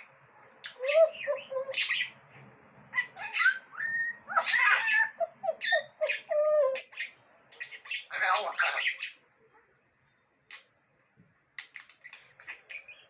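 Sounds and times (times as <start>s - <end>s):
parrot chattering and whistling: 0.6s - 2.2s, 3.0s - 9.2s.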